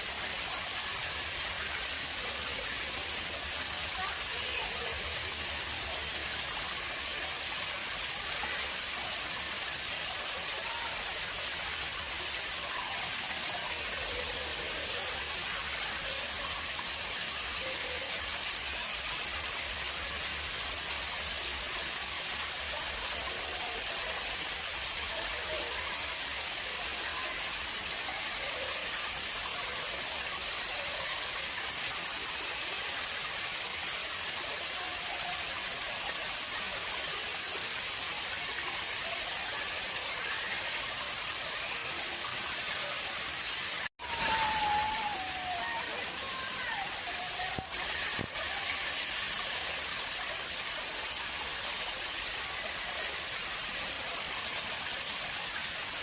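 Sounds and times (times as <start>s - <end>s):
water splashing into pond: 47.0s - 51.7s.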